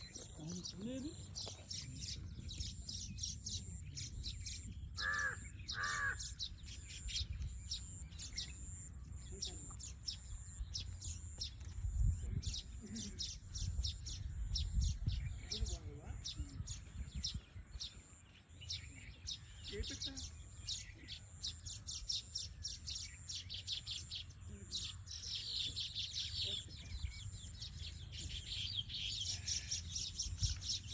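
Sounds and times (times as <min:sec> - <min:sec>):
small birds chirping: 0:00.0 - 0:30.9
crow cawing: 0:05.0 - 0:06.4.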